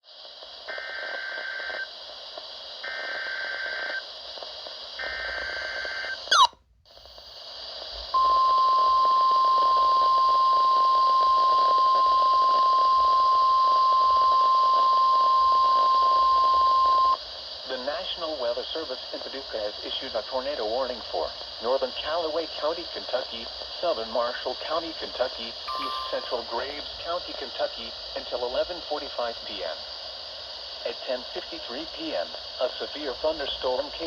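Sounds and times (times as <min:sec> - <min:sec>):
radio glitch: 0:05.0 - 0:06.5
buzzing data bursts: 0:05.1 - 0:06.5
steady warning alarm tone: 0:05.1 - 0:06.5, 0:25.7 - 0:26.7
constant hiss: 0:11.0 - 0:34.0.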